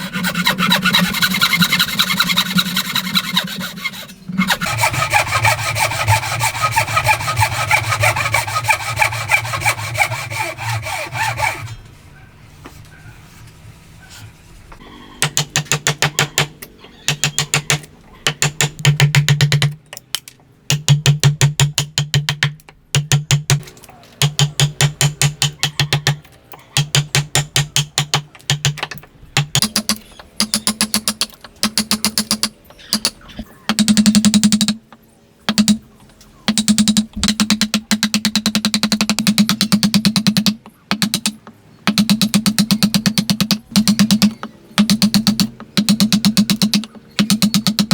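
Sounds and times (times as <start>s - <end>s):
hand tool rapid strokes on wood: 0.0s - 11.7s.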